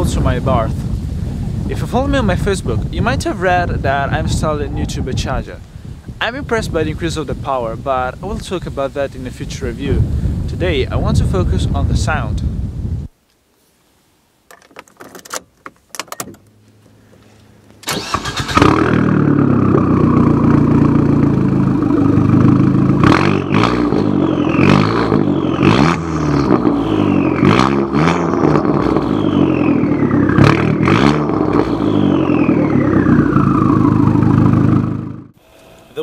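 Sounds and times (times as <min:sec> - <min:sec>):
car engine idling and revving: 0:16.4 - 0:35.4
turbocharger whistle: 0:19.9 - 0:35.3.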